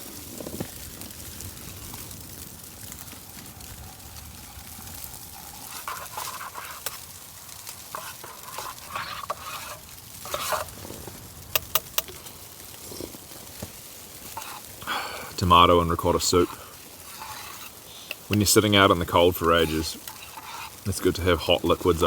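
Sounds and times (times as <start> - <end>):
spoon scraping while stirring soup: 5.4 - 12.2, 14.2 - 14.8, 16.4 - 21.7.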